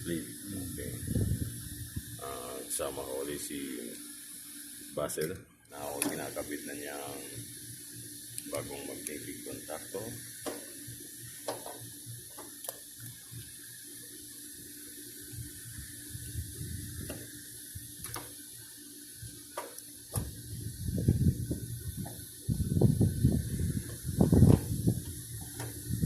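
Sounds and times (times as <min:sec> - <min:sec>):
steady hiss: 0:00.0 - 0:26.0
low rumbling: 0:00.6 - 0:02.4, 0:20.4 - 0:26.0.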